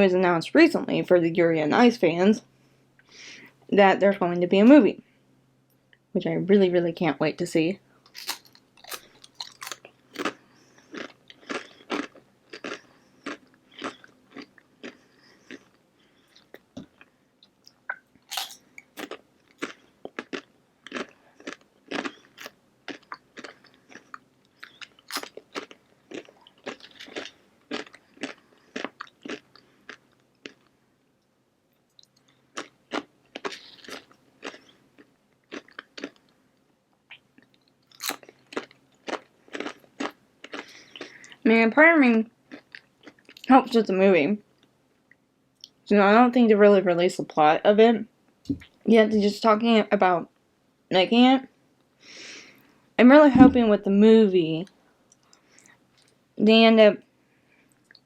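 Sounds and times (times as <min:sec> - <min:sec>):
chewing and crunching food: 0:08.0 - 0:30.8, 0:31.7 - 0:41.5, 0:42.4 - 0:43.6, 0:54.6 - 0:56.3, 0:57.6 - 0:58.0.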